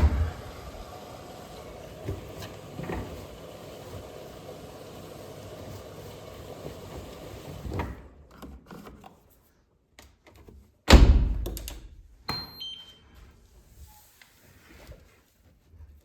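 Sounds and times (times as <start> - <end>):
washing machine door thump: 0.0 - 0.8.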